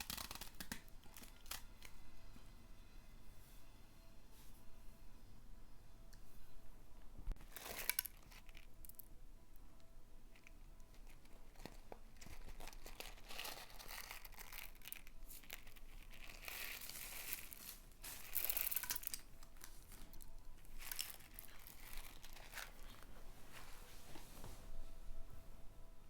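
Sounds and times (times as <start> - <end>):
slime crackling and tearing: 0.0 - 1.7, 12.3 - 19.2, 19.9 - 23.0.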